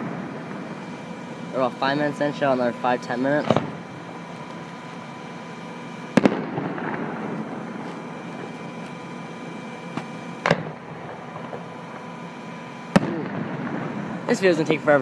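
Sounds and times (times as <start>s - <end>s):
fireworks booming: 3.4s - 4.7s, 6.1s - 8.8s, 9.8s - 12.1s, 12.9s - 14.4s
rumbling echo: 6.2s - 7.8s, 12.9s - 15.0s.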